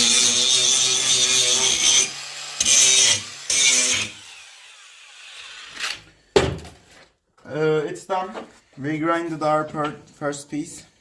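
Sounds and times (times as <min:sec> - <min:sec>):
angle grinder grinding steel: 0:00.0 - 0:06.0.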